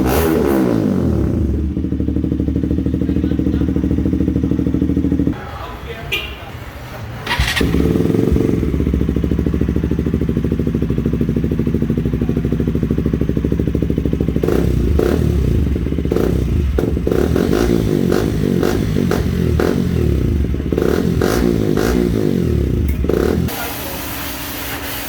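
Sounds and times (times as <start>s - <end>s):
motorcycle engine idling: 0.7s - 6.4s, 7.2s - 24.0s.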